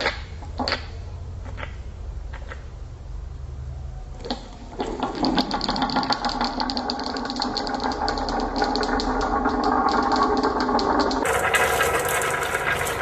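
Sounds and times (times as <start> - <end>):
marbles rattling down wooden run: 4.9 - 13.0.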